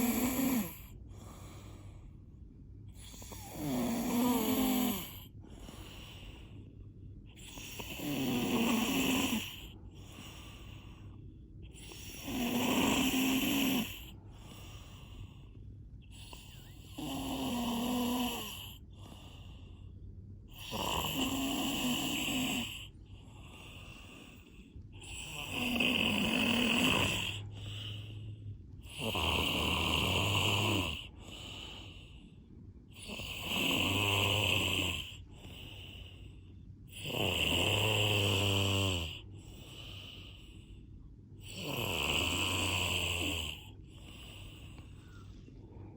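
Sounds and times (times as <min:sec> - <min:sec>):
loud snoring: 0:00.0 - 0:00.9, 0:03.0 - 0:06.4, 0:07.4 - 0:10.8, 0:11.7 - 0:15.2, 0:16.1 - 0:19.4, 0:20.5 - 0:28.2, 0:28.8 - 0:32.0, 0:32.9 - 0:36.0, 0:36.9 - 0:40.1, 0:41.4 - 0:44.7
quiet breathing: 0:00.0 - 0:45.9.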